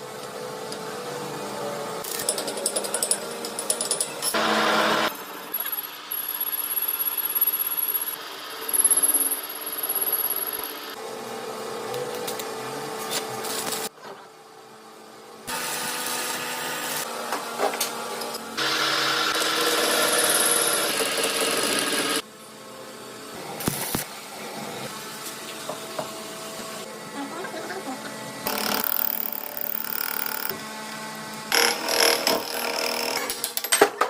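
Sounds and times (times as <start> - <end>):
power tools machining metal: 3.8 - 11.0, 18.6 - 22.2, 28.5 - 30.6, 31.5 - 33.5.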